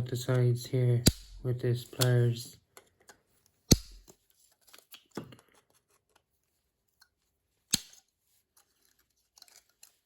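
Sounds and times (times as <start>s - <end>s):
plastic snapping: 1.0s - 1.4s, 3.7s - 4.2s.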